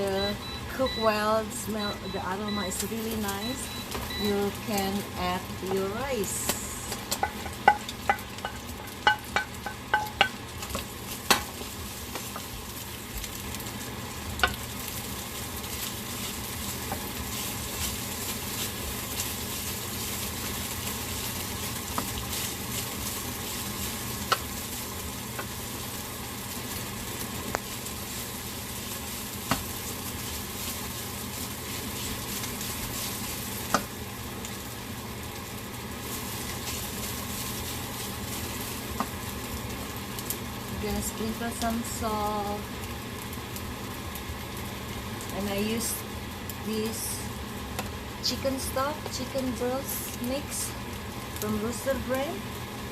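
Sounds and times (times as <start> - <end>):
rice sizzling in a pan: 0.0 - 52.9
utensil knocking against pan: 7.2 - 10.4.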